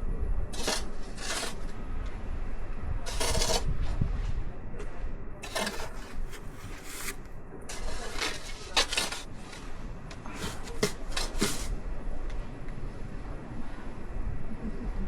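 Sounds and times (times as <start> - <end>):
snow shovel scraping snow: 0.6 - 1.8, 3.1 - 3.7, 5.4 - 11.8.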